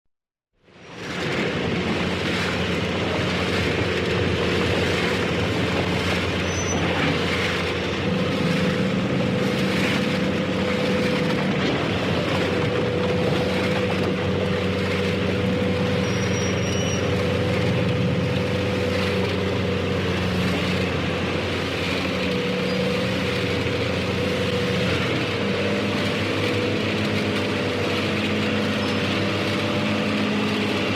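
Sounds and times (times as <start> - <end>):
harvester engine running: 0.6 - 30.9
high-pitched squeal: 5.9 - 8.9, 15.8 - 17.6.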